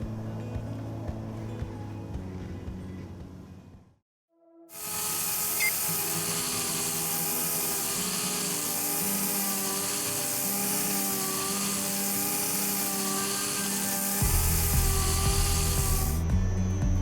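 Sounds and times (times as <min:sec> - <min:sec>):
power tool whirring: 0:04.8 - 0:16.3.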